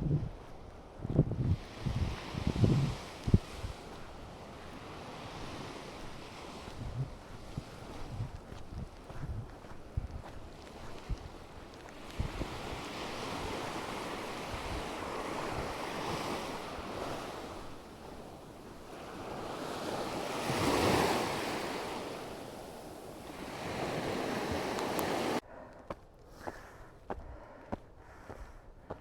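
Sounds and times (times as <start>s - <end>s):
wind buffeting microphone: 0.0s - 25.4s
footsteps tapping lightly: 7.4s - 12.3s.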